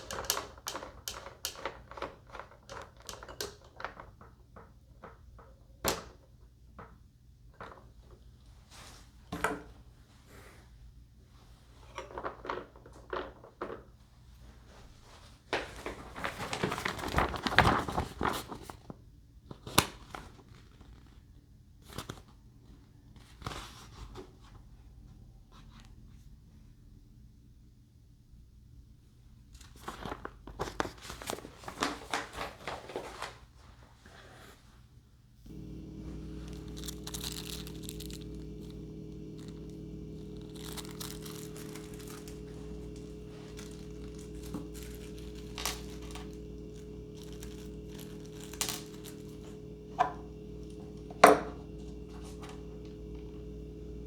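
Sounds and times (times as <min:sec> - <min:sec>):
steady low hum: 0:35.4 - 0:54.0
packaging crinkling and tearing: 0:35.5 - 0:49.5.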